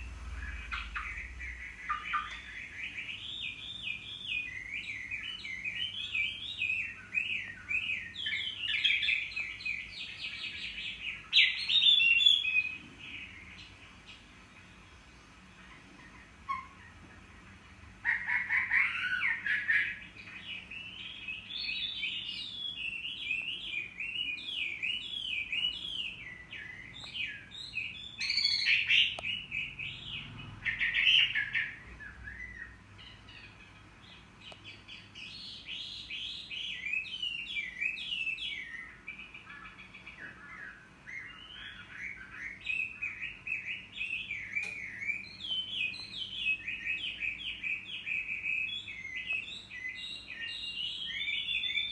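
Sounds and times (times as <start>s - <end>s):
bird singing whistled phrases: 21.6s - 29.4s, 40.5s - 51.9s.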